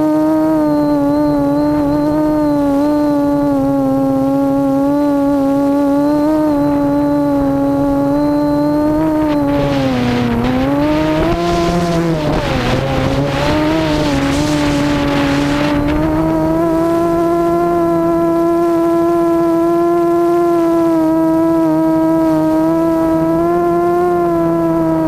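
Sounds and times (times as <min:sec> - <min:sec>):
drone motors humming: 0:00.0 - 0:25.0
wind rushing: 0:06.4 - 0:17.6.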